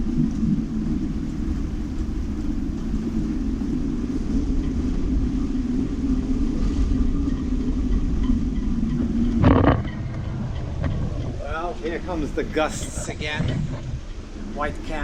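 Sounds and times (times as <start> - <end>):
gusty wind buffeting microphone: 0.0 - 15.0.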